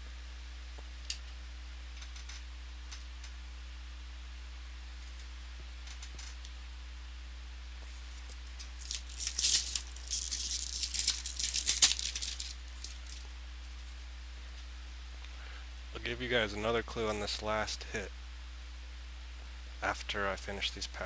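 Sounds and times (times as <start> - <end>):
low electrical hum: 0.0 - 21.0
wrapper crinkling and tearing: 7.9 - 13.2.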